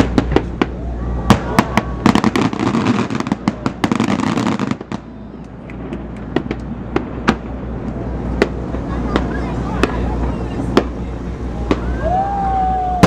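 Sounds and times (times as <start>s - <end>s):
fireworks crackling and banging: 0.0s - 13.0s.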